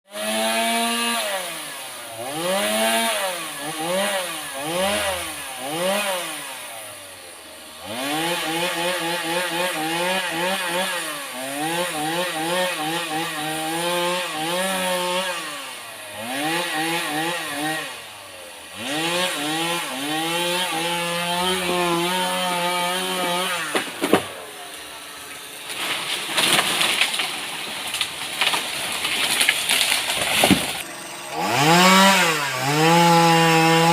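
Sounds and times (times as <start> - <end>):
chainsaw engine revving: 0.1 - 33.9
wood cracking: 19.4 - 33.9.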